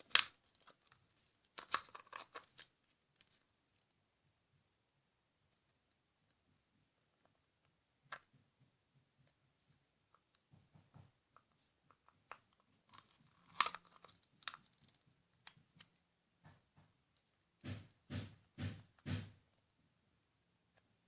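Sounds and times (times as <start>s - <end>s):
plastic parts clicking: 0.0s - 3.8s, 11.3s - 16.0s.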